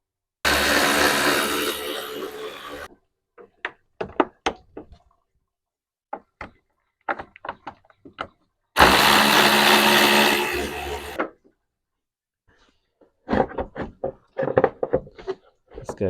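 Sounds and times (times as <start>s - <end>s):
whirring tool: 0.5s - 2.9s, 8.8s - 11.2s.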